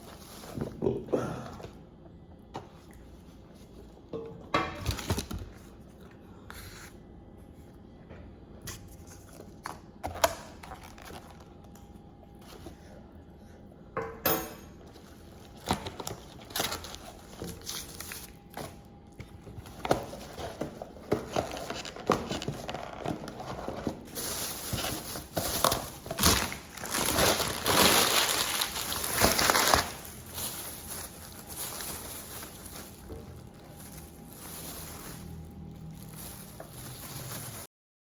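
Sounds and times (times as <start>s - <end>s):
paper and plastic rustling: 0.0s - 0.8s, 8.7s - 11.8s, 14.9s - 37.7s.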